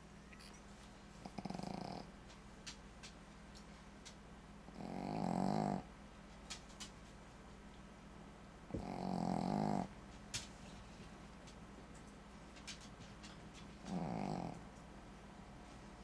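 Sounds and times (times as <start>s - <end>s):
dog snoring: 1.2s - 2.1s, 4.8s - 5.9s, 8.7s - 9.9s, 13.8s - 14.6s.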